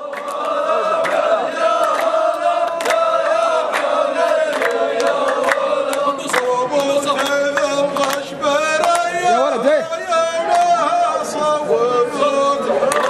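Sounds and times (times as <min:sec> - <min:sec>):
man chanting with layered echo: 0:05.9 - 0:13.0.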